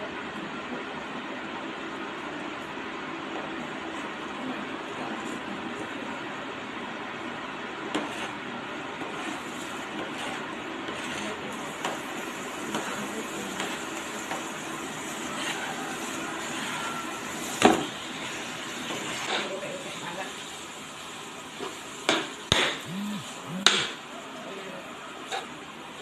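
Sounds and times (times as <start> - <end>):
meat sizzling in a pan: 11.5 - 22.8.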